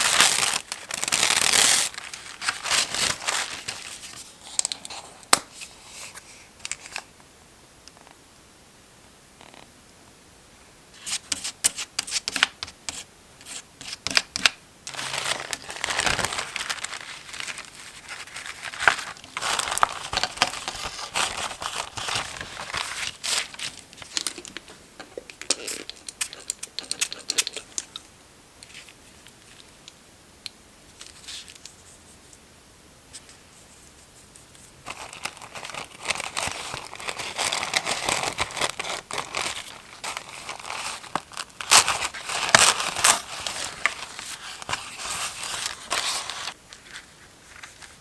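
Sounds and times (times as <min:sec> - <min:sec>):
paper crinkling and tearing: 0:00.0 - 0:05.0, 0:13.5 - 0:24.6, 0:25.4 - 0:27.8, 0:34.8 - 0:48.0.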